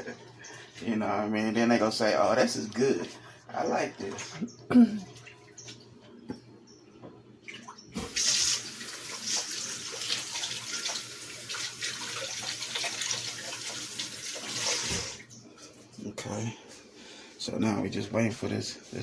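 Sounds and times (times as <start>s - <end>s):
tap water running into sink: 7.9s - 15.3s.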